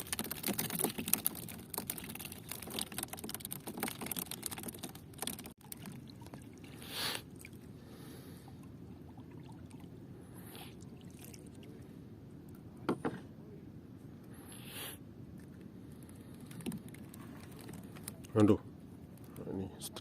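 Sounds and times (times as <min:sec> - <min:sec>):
water splashes: 0:00.0 - 0:07.6, 0:10.8 - 0:11.8.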